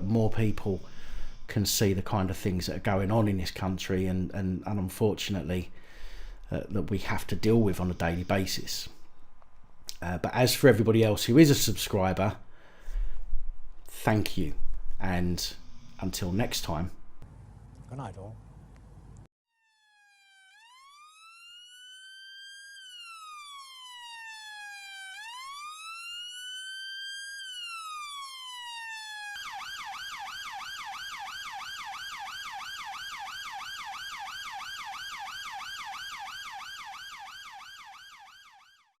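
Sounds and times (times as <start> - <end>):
electronic police siren: 19.5 - 39.0.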